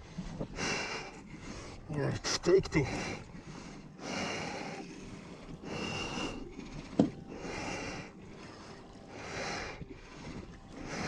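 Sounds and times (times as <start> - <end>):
person breathing hard: 2.9 - 11.0.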